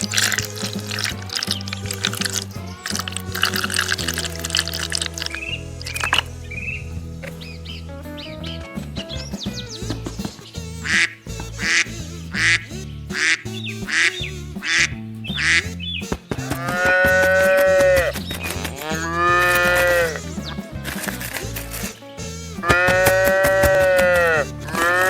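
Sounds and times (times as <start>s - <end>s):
background music: 0.0s - 25.0s
duck quacking: 9.8s - 25.0s
cow mooing: 16.4s - 20.2s, 22.6s - 25.0s.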